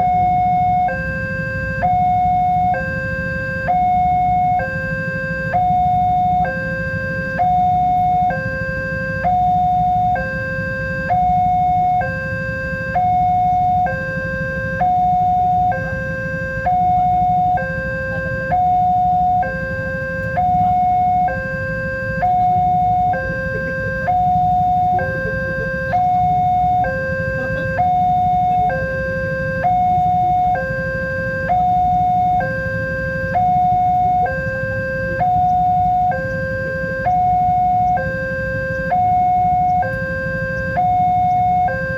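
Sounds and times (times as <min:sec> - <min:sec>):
two-tone crossing alarm: 0:00.0 - 0:41.9.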